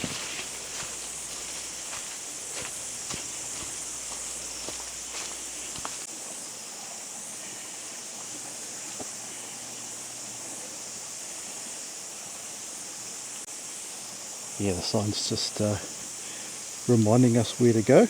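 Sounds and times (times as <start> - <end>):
faint footsteps: 0.0 - 6.1
rushing outdoor noise: 0.0 - 10.0
high hiss: 0.0 - 18.0.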